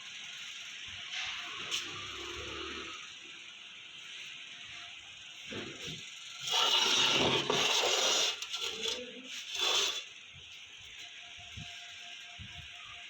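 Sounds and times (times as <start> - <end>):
abrasive scraping on metal: 6.4 - 10.2.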